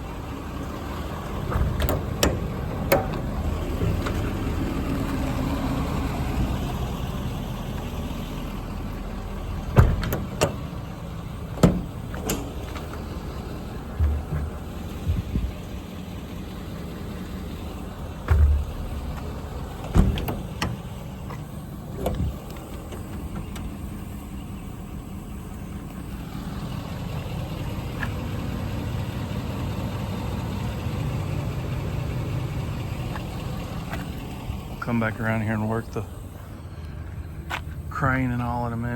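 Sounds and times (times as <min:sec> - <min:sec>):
truck engine idling: 0:00.0 - 0:38.9
short knocks: 0:13.9 - 0:15.4.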